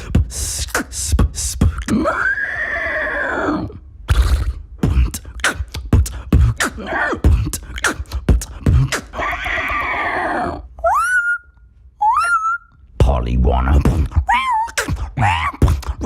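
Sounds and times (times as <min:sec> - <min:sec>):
beatboxing kicks and snares: 0:00.0 - 0:02.0, 0:04.1 - 0:09.2, 0:13.0 - 0:16.0
raspy held vocal sound: 0:00.0 - 0:11.4, 0:12.0 - 0:16.0.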